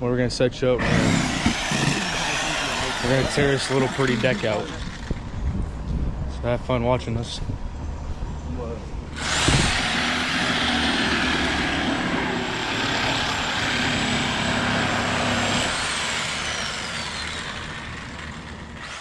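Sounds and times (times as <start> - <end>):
power saw whining: 0.8 - 5.4, 9.2 - 19.0.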